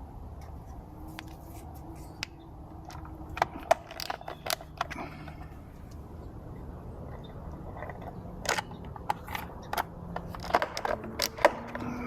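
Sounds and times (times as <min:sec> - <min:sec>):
clicks of hardware being handled: 0:02.2 - 0:06.0, 0:07.8 - 0:12.0.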